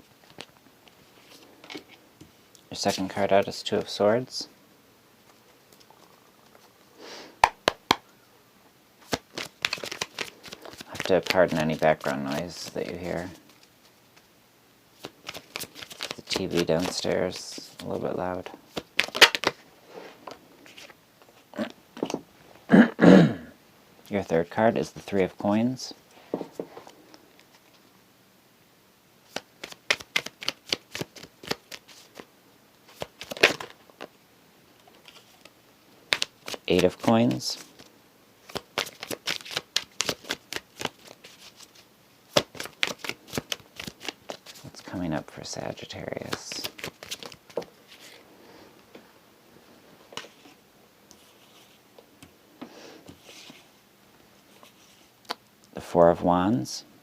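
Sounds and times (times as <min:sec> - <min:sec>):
cards being shuffled: 0:09.0 - 0:14.3, 0:15.0 - 0:19.6, 0:20.3 - 0:22.2, 0:29.3 - 0:34.1, 0:34.8 - 0:45.2, 0:46.0 - 0:48.2, 0:50.2 - 0:50.6, 0:53.1 - 0:53.7.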